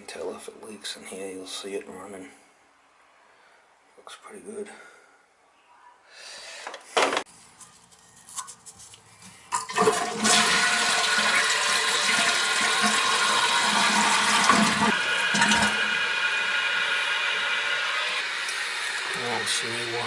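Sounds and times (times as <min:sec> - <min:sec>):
toilet flushing: 0:09.6 - 0:20.0.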